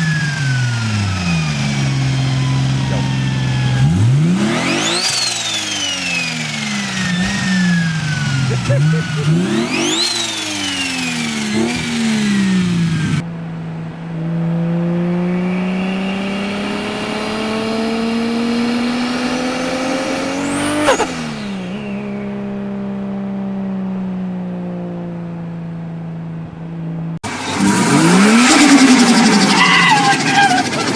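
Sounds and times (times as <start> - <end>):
turbo engine revving: 0.0 - 13.2, 14.2 - 23.3, 27.3 - 30.9
turbocharged car engine: 0.0 - 30.9
turbo whistling sweep: 0.3 - 12.5, 20.2 - 22.5.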